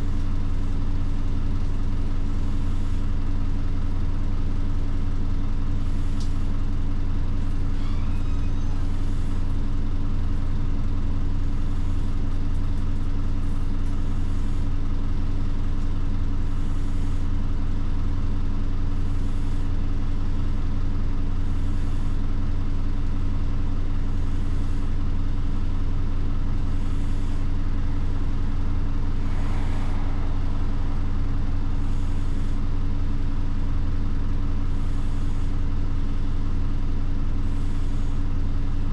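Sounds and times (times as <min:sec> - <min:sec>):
bus diesel engine hum: 0:00.0 - 0:38.9
faint high pulse: 0:26.6 - 0:35.5.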